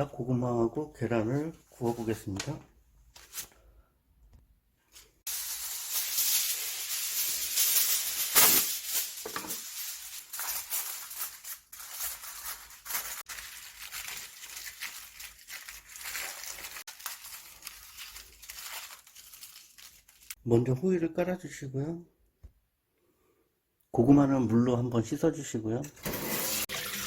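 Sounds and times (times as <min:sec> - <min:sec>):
aluminium foil crinkling: 0:04.9 - 0:20.4.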